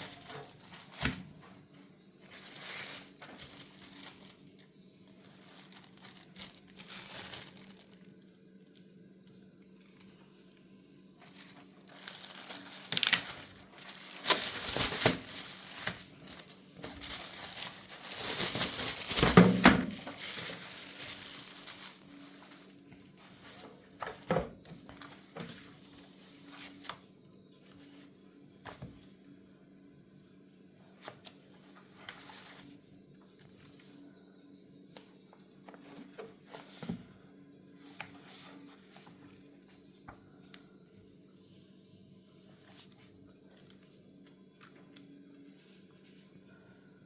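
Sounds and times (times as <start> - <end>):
packing material rustling: 0.0 - 1.4, 2.2 - 8.3, 11.2 - 27.0.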